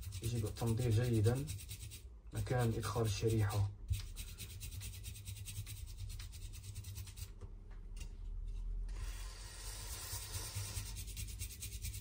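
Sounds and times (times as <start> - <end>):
rapid rubbing strokes: 0.0 - 7.4, 9.0 - 12.0.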